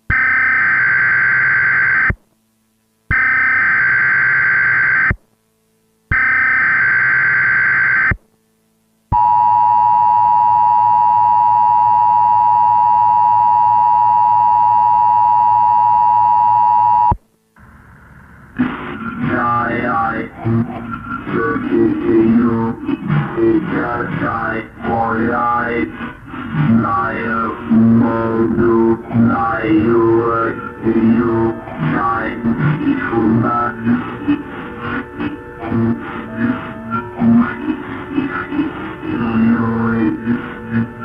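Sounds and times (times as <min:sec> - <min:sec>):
music: 0:18.5 - 0:41.0
screeching data bursts: 0:18.6 - 0:41.0.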